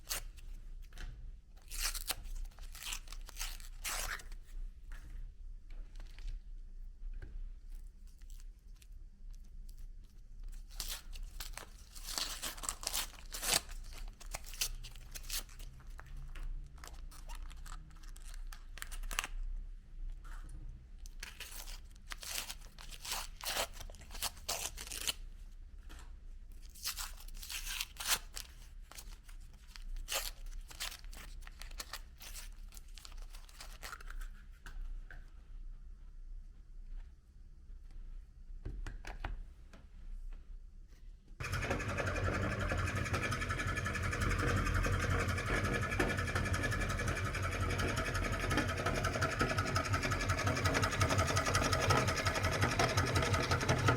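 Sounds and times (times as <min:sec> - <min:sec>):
low motor hum: 0:41.4 - 0:53.9.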